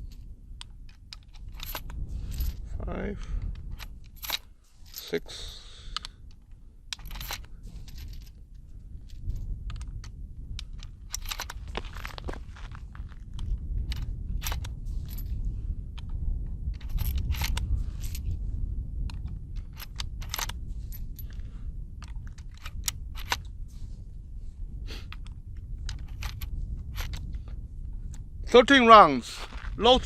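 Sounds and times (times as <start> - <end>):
rifle loading metallic clicks: 0.0 - 2.6, 3.4 - 5.2, 5.9 - 12.2, 13.3 - 15.4, 16.0 - 18.3, 19.0 - 21.4, 22.0 - 23.5, 25.1 - 27.5.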